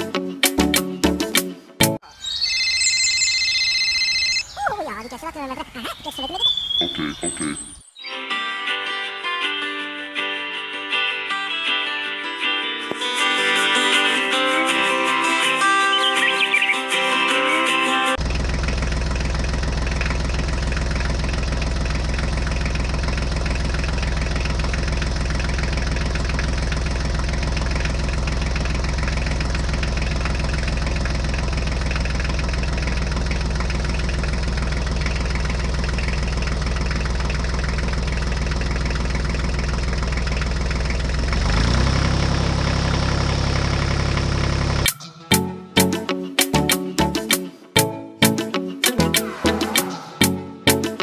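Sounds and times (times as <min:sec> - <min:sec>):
tractor engine droning: 0:18.1 - 0:44.9.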